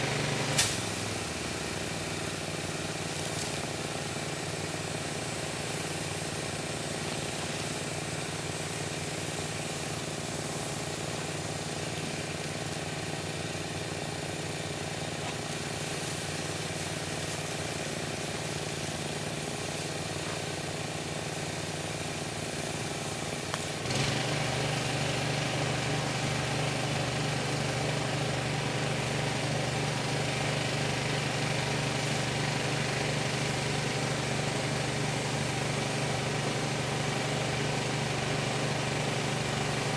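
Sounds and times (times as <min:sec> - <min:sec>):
steady hiss: 0:00.0 - 0:12.8, 0:15.5 - 0:23.8, 0:28.8 - 0:39.9
pressure washer engine running: 0:00.0 - 0:39.9.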